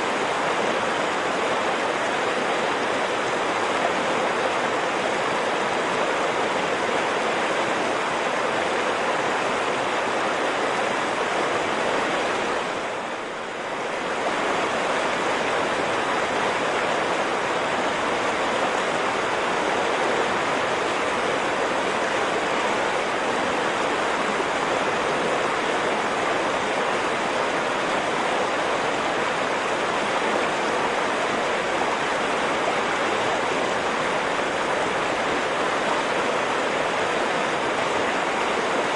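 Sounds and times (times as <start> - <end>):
ocean waves washing: 0.0 - 38.9
stream flowing: 0.0 - 38.9.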